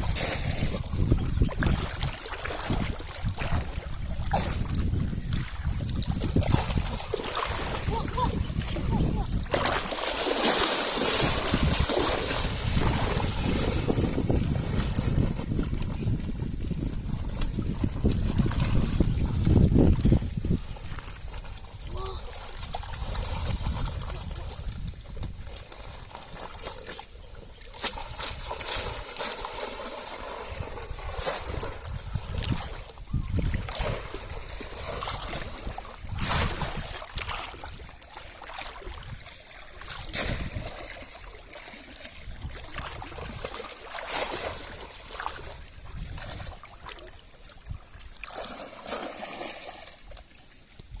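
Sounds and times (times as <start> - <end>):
water splashing and sloshing: 0.0 - 51.0.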